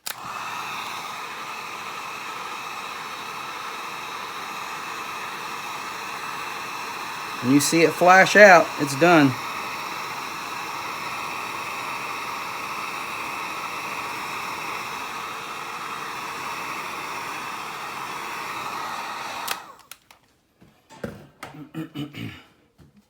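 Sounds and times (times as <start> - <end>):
hot-air blower running: 0.0 - 20.0.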